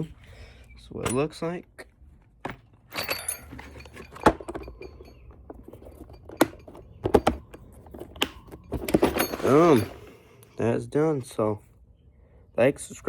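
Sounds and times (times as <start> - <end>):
metal tools clinking in toolbox: 0.9 - 1.5, 2.5 - 10.4.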